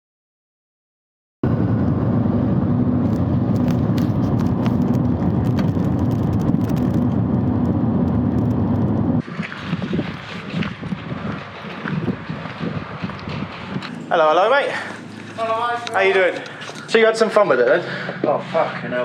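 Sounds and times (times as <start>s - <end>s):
motorcycle engine running: 1.4s - 9.2s.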